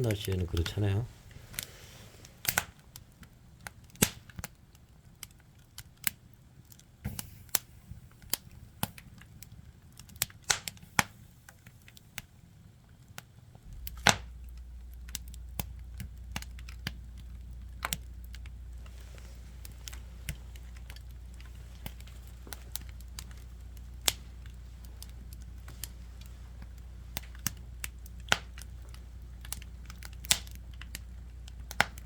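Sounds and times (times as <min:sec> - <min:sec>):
firewood crackling and popping: 0:00.0 - 0:32.0
low steady hum: 0:00.0 - 0:32.0.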